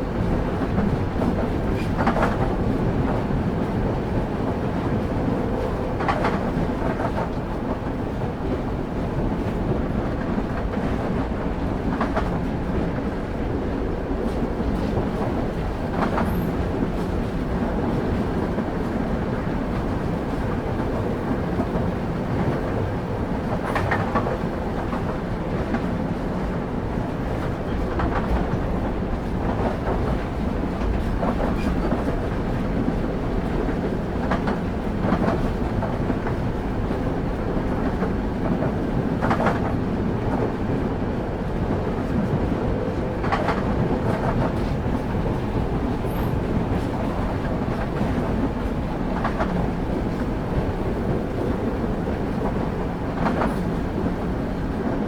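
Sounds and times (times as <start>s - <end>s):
train wheels rumbling: 0.0s - 55.0s
wheels clacking over rail joints: 27.2s - 36.9s.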